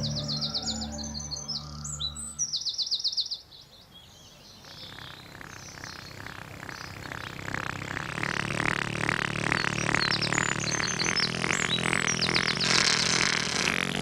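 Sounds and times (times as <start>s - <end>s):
soft sustained music: 0.0s - 2.9s
birds chirping in trills: 0.0s - 13.5s.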